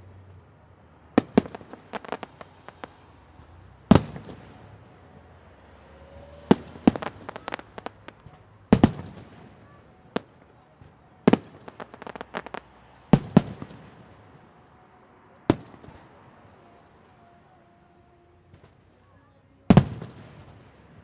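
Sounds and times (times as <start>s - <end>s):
firework crackling: 0.1s - 21.0s
firework bangs: 1.1s - 4.8s, 5.6s - 14.6s, 15.5s - 17.3s, 19.7s - 21.0s.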